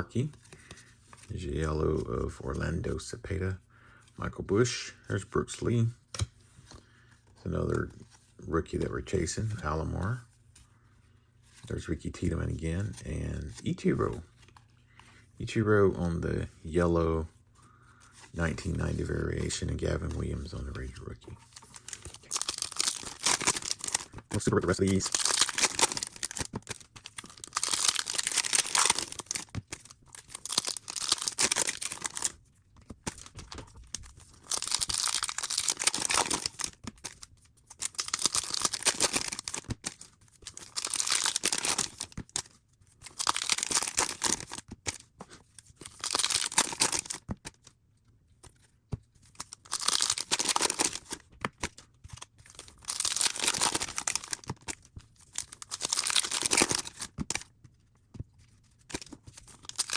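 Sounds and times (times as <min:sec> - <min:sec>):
card pack wrappers tearing: 0:21.6 - 0:32.4, 0:33.1 - 0:45.0, 0:45.8 - 0:47.2, 0:49.4 - 0:51.7, 0:52.5 - 0:57.5, 0:58.9 - 0:59.9.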